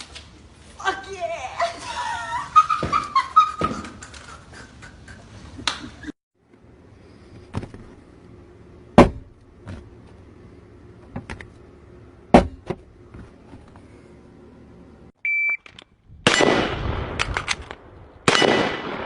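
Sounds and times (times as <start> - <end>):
gunshots: 16.2 - 17.6, 18.2 - 19.0.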